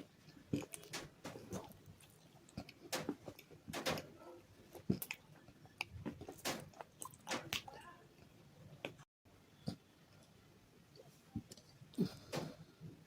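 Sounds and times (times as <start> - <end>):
crunching hard bars: 0.5 - 1.8, 2.5 - 5.2, 5.8 - 7.8.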